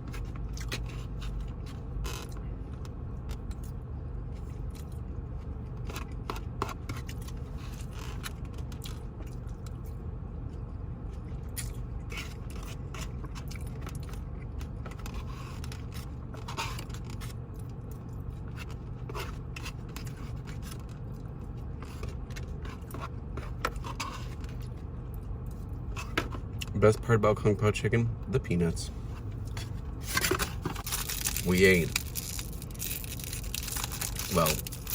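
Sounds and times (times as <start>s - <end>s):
steady low hum: 0.0s - 34.9s
fork scraping takeout container: 18.4s - 20.9s, 21.8s - 24.8s, 29.0s - 34.9s.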